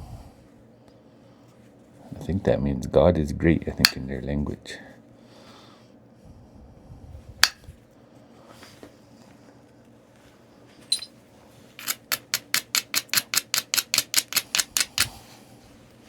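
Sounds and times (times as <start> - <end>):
knapping tool tapping stone: 11.8 - 15.2.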